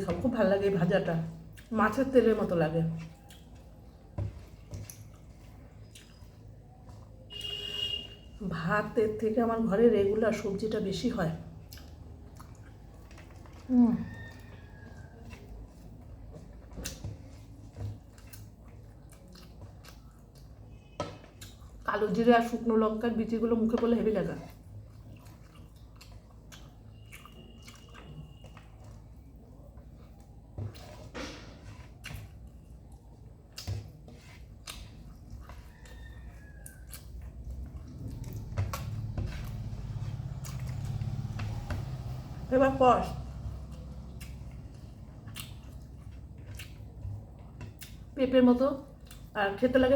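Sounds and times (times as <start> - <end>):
person chewing: 3.0 - 8.0, 11.6 - 21.9, 24.5 - 41.6, 43.4 - 48.2, 48.9 - 49.3.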